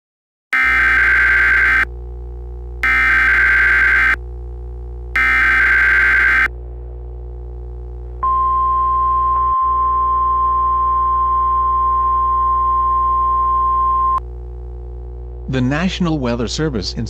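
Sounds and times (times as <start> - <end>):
digital data burst: 0.6 - 1.9, 2.8 - 4.2, 5.2 - 6.5
warning alarm tone: 0.6 - 1.9, 2.8 - 4.2, 5.2 - 6.5
low synthesizer drone: 0.6 - 8.3.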